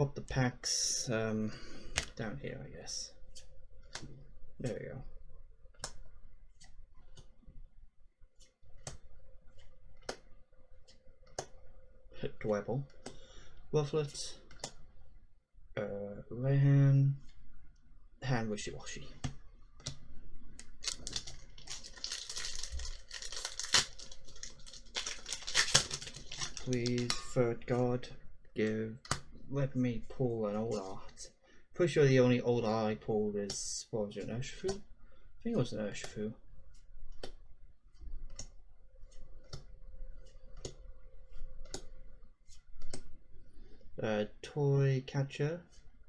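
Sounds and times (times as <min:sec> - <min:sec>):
foil wrapper crinkling and tearing: 0:20.6 - 0:27.2.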